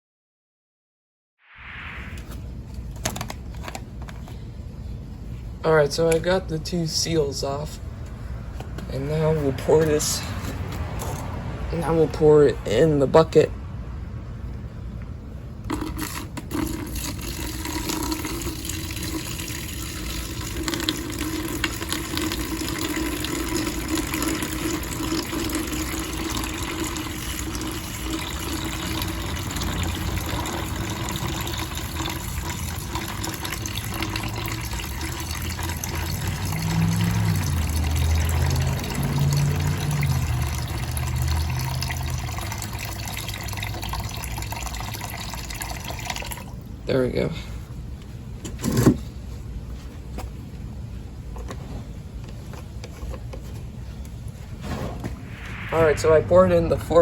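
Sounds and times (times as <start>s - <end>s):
liquid pouring into plastic bucket: 15.7s - 46.5s.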